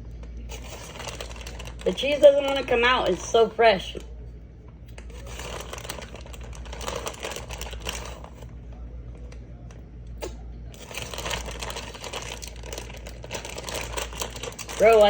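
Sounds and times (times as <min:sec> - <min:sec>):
plastic packaging crinkling: 0:00.5 - 0:04.0, 0:05.0 - 0:08.5, 0:10.7 - 0:15.0.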